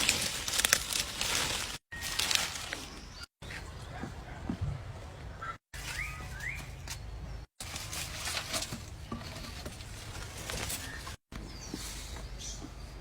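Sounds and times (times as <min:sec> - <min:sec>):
scratchy rustling: 0:00.0 - 0:03.0
bird chirping: 0:05.4 - 0:07.5.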